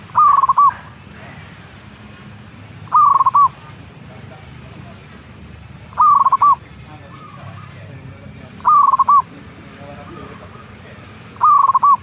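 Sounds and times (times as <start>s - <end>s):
dove cooing: 0.0s - 1.0s, 2.8s - 3.8s, 5.9s - 6.6s, 8.6s - 9.3s, 11.3s - 12.0s
faint bird calls: 0.0s - 4.0s, 5.8s - 7.9s, 8.5s - 9.4s, 10.0s - 12.0s.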